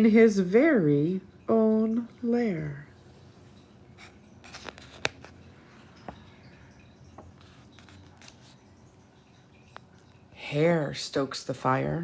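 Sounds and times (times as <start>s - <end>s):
page being turned: 4.4s - 5.4s, 7.4s - 8.6s.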